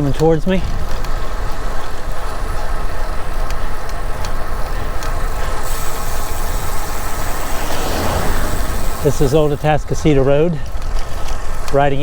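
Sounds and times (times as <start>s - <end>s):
tyre and road rumble: 0.0s - 12.0s
high hiss: 4.7s - 9.8s
wind rushing over microphone: 5.2s - 10.0s.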